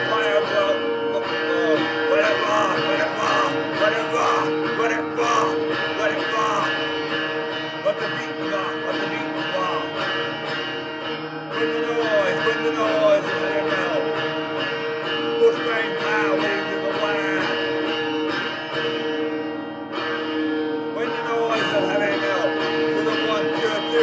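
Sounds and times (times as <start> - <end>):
guitar music: 0.0 - 24.0.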